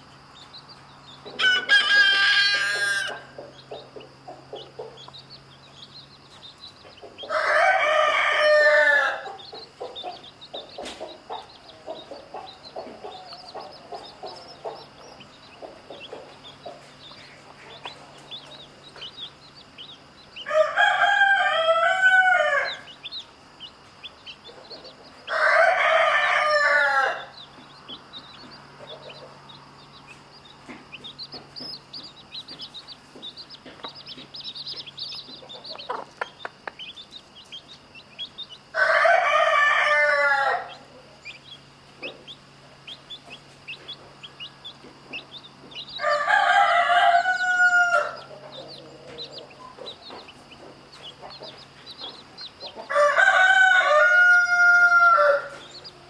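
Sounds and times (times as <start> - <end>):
chicks peeping softly: 0.0 - 56.0
rooster crowing: 1.3 - 3.4, 7.2 - 9.5, 20.4 - 23.2, 25.2 - 27.5, 38.7 - 41.1, 45.8 - 50.6, 52.1 - 56.0.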